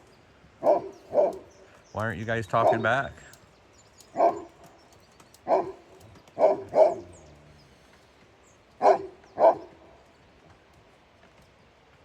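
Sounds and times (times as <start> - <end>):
dog barking: 0.6 - 1.5, 2.6 - 3.0, 4.2 - 4.6, 5.5 - 5.8, 6.4 - 7.2, 8.8 - 9.8.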